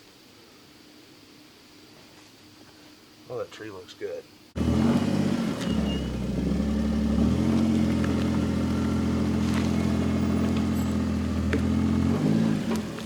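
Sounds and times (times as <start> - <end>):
small engine idling: 4.6 - 13.0.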